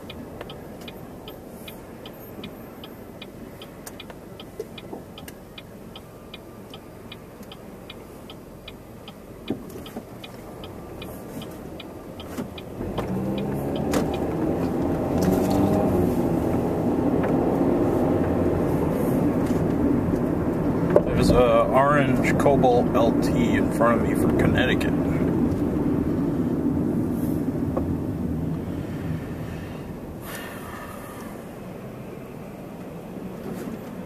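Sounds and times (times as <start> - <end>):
turn signal relay clicking: 0.0 - 15.3
car engine hum: 0.0 - 34.0.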